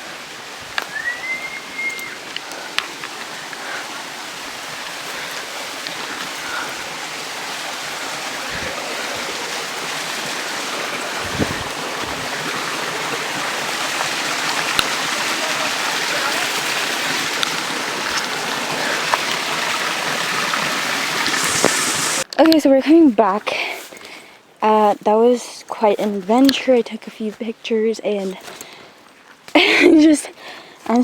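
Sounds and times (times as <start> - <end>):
stream water rushing: 0.0 - 22.3
short high whistle: 0.9 - 2.2.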